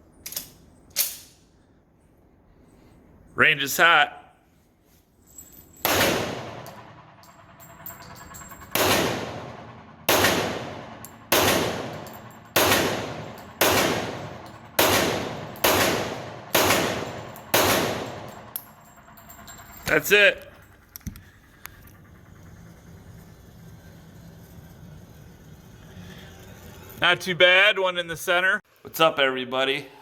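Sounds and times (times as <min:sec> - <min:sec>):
pistol shots: 0:05.8 - 0:06.7, 0:08.7 - 0:18.4.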